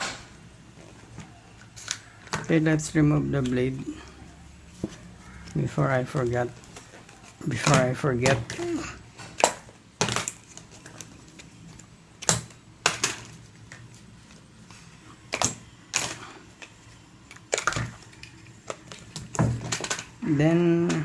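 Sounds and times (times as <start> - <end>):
plastic parts clicking: 4.8 - 14.4, 15.3 - 20.2.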